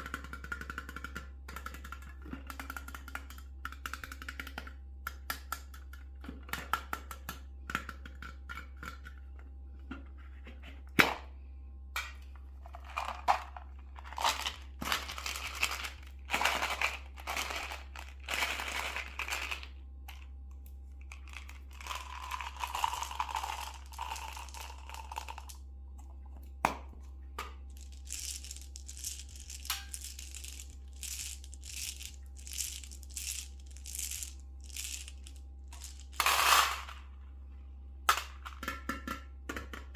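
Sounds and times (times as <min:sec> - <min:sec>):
candy packaging crinkling: 0:12.6 - 0:19.8, 0:21.1 - 0:25.5, 0:27.7 - 0:36.5.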